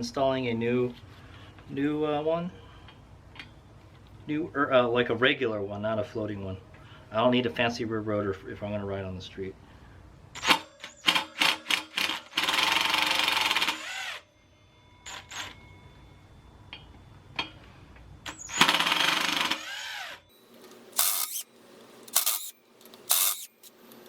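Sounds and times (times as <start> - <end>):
impact wrench loosening bolts: 20.7 - 21.4, 22.1 - 23.8
sharp metallic clicks: 20.9 - 21.5, 22.1 - 24.0.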